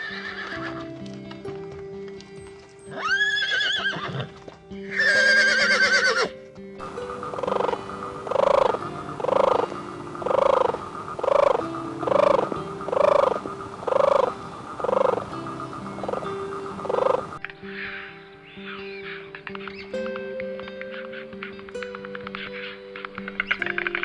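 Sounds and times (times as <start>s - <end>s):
background music: 0.0s - 24.0s
horse neighing: 2.9s - 6.3s.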